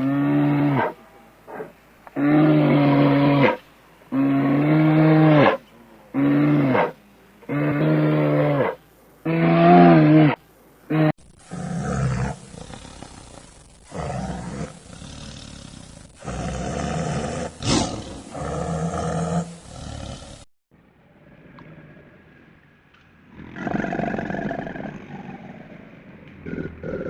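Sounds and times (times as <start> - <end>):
large animal roaring: 0.0 - 20.4, 23.3 - 27.0
loud animal call: 0.0 - 20.4.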